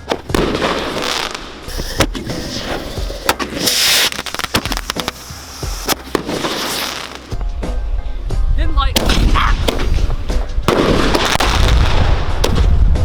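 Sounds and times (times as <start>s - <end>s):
fireworks hissing burst: 0.0s - 7.4s
fireworks cracking and popping: 0.0s - 7.5s, 9.0s - 13.0s.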